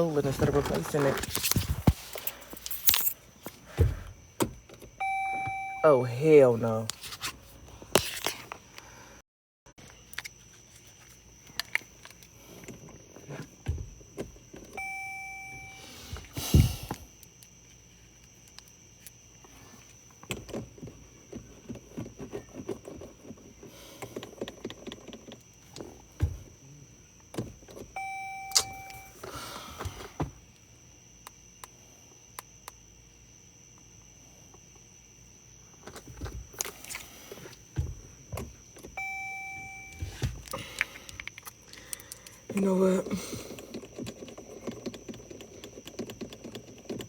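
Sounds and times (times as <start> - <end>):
clicks and rustling inside car: 0.0 - 7.3, 19.8 - 26.6, 35.8 - 41.5, 42.1 - 47.0
heavy thumps: 3.7 - 4.6, 16.0 - 17.0
electronic car chime: 5.0 - 6.6, 14.8 - 16.2, 28.0 - 29.3, 39.0 - 40.2.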